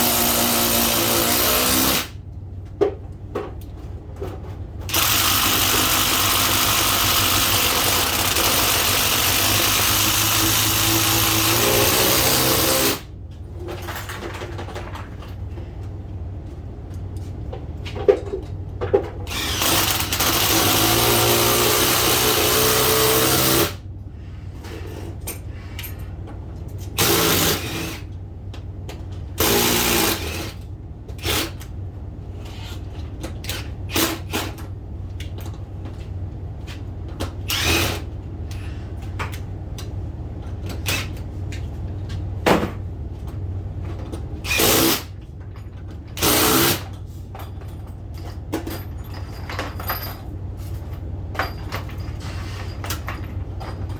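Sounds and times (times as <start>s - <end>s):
power drill running: 0.0s - 2.1s, 4.9s - 13.1s, 19.3s - 23.8s, 27.0s - 28.0s, 29.4s - 30.5s, 37.5s - 38.0s, 46.2s - 46.8s.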